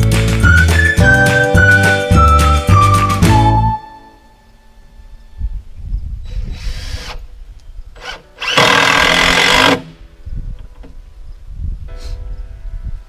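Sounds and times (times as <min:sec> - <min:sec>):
screw gun driving screws: 0:06.5 - 0:07.2, 0:08.0 - 0:09.9.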